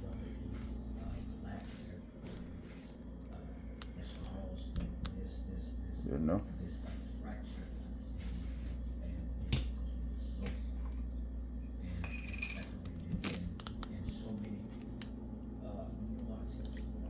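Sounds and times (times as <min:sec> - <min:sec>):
steady low hum: 0:00.0 - 0:17.0
dishware clinking: 0:12.0 - 0:12.8.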